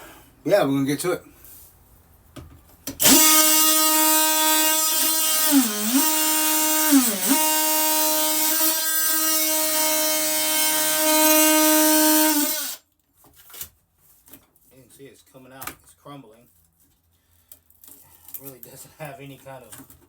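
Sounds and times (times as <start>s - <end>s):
power tool whining while cutting board: 3.0s - 12.8s.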